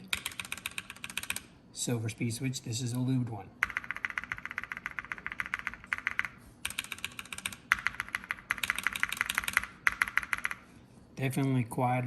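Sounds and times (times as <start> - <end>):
mechanical keyboard keys tapping: 0.0 - 1.5, 3.6 - 10.6.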